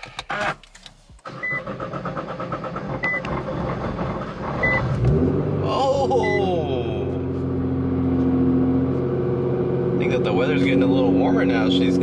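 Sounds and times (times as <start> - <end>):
car warning chime beeps: 1.4 - 1.7, 3.0 - 3.3, 4.6 - 4.9, 6.2 - 6.6
car engine running: 1.5 - 12.0.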